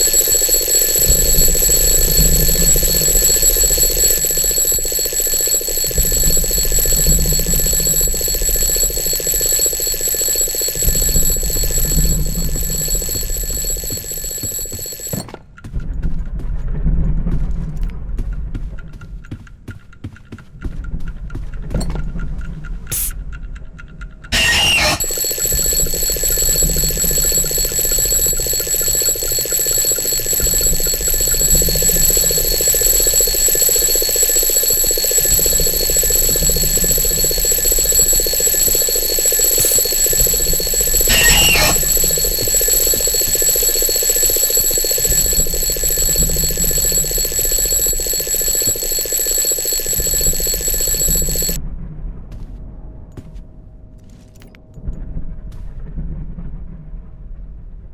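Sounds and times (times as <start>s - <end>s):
alarm clock ringing shrilly: 0.0s - 15.4s, 24.3s - 51.6s.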